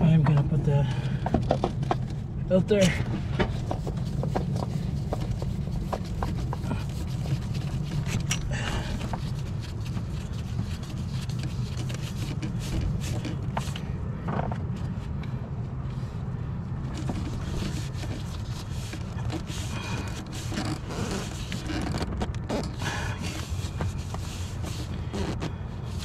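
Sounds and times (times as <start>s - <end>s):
steady low rumble: 0.0s - 26.0s.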